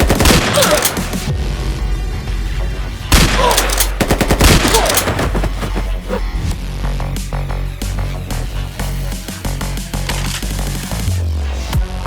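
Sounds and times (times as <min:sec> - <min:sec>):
rapid gunfire: 0:00.0 - 0:01.2, 0:03.2 - 0:06.2.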